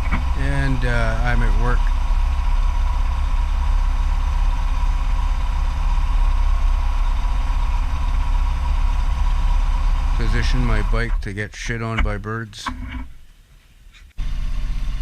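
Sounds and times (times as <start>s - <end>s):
motorcycle engine idling: 0.0s - 11.2s.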